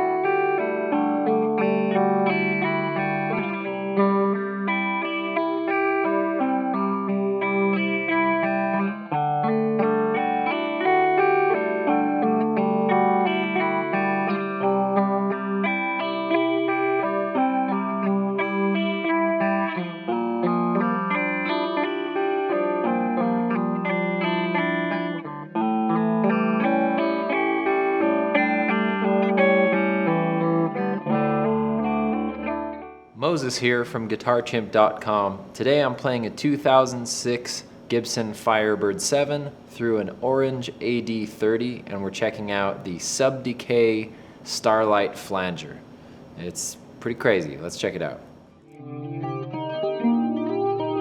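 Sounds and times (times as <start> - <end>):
electric guitar with flanger: 0.0 - 33.1, 48.3 - 51.0.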